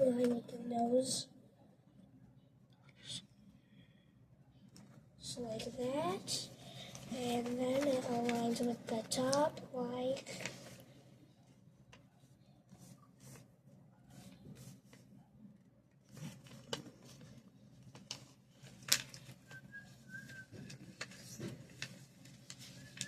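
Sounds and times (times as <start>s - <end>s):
paper crinkling and folding: 4.8s - 11.0s, 16.0s - 23.0s
faint high whistle-like tone: 19.4s - 20.6s.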